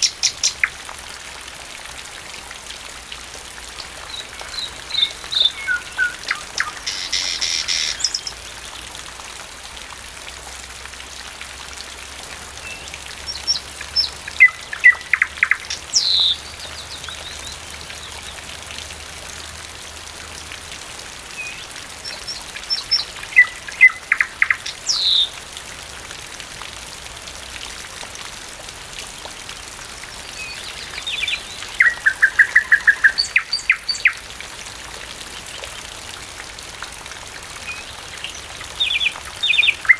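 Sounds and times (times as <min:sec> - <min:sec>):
steady rain: 0:00.0 - 0:39.9
bird singing: 0:04.1 - 0:08.4, 0:12.7 - 0:18.2, 0:30.2 - 0:34.2, 0:37.7 - 0:39.9.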